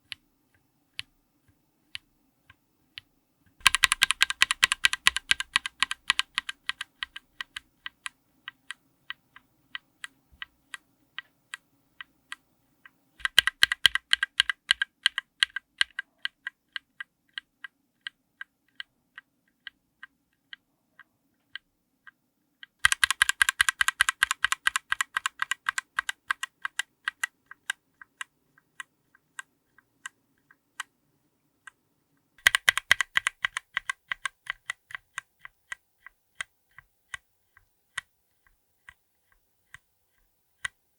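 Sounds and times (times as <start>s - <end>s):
mechanical keyboard clacking: 3.6s - 12.4s, 13.2s - 17.7s, 22.8s - 30.9s, 32.4s - 35.8s.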